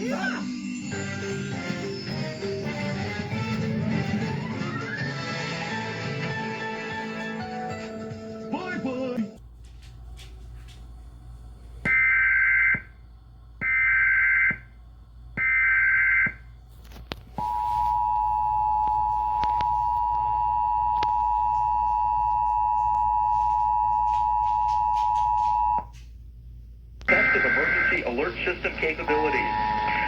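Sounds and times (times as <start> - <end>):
two-tone data screech: 27.1 - 28.1, 28.8 - 30.0
two-tone attention signal: 29.2 - 30.0.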